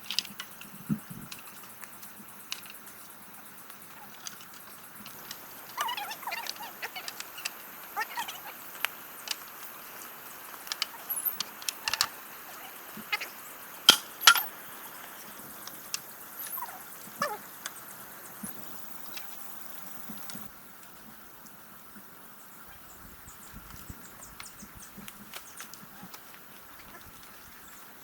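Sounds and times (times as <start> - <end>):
animal chirping calls: 5.7 - 8.6, 10.9 - 13.4, 16.4 - 17.4.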